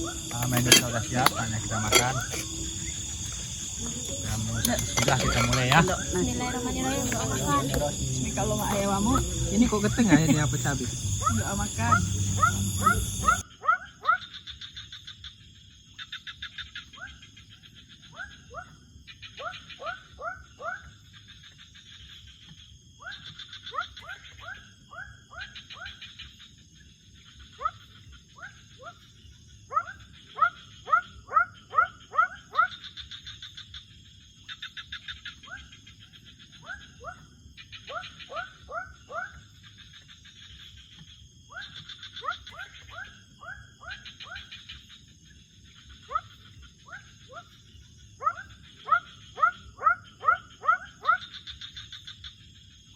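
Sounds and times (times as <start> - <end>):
buzzy pulsed trills: 0.0 - 13.4
frogs chirping: 0.0 - 52.9
high-pitched insect whine: 0.0 - 52.9.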